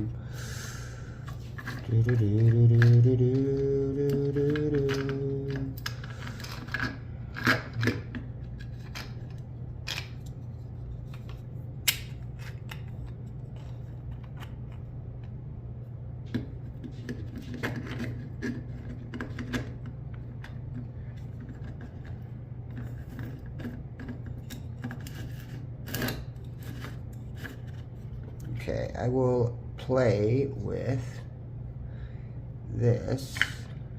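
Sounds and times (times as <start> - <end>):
steady low hum: 0.0 - 33.9
plastic parts clicking and knocking: 16.3 - 28.4.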